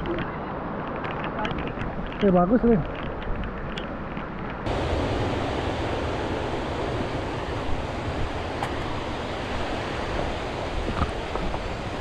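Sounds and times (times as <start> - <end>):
wind on the microphone: 0.0 - 12.0
ocean surf washing onto beach: 4.6 - 12.0.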